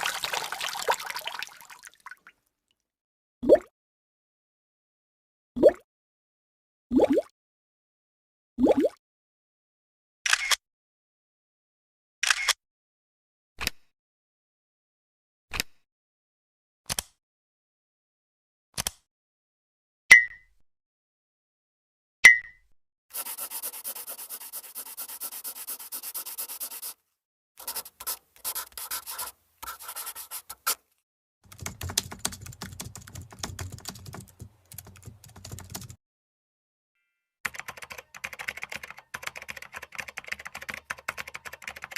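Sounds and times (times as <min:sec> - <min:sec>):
rapid clicking and tapping: 0:31.5 - 0:36.0.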